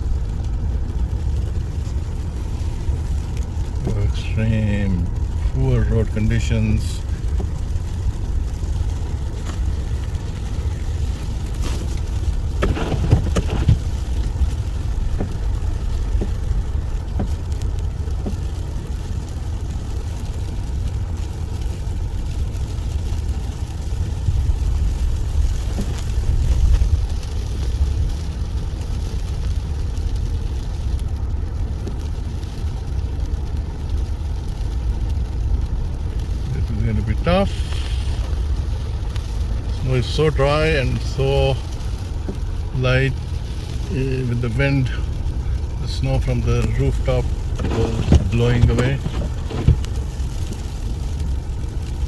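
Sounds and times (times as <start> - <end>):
car engine and tyre noise: 0.0 - 52.0
knocks and clicks: 12.6 - 13.9, 47.6 - 50.0.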